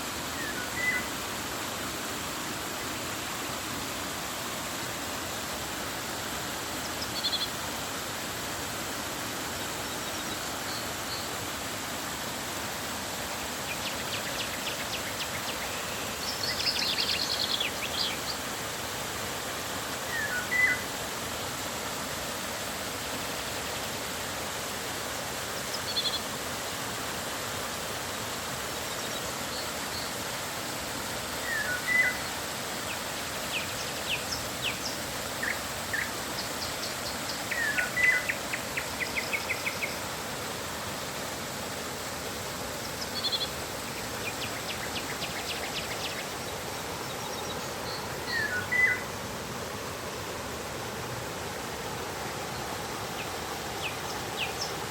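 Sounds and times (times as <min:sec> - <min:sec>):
river water flowing: 0:00.0 - 0:54.9
birds calling and trilling: 0:42.9 - 0:49.1.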